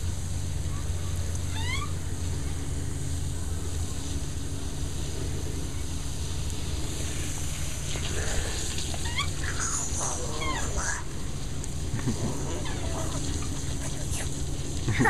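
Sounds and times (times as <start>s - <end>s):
electric pump hum: 0.0s - 15.0s
running water: 4.0s - 15.0s.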